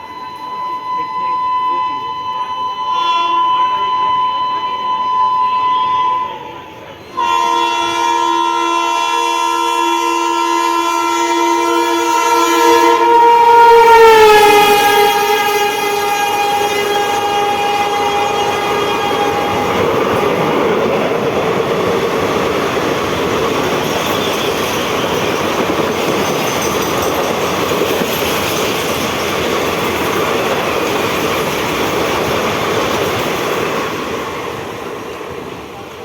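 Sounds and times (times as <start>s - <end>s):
locomotive horn: 0.0s - 21.0s
train wheels clattering on rails: 14.3s - 36.0s.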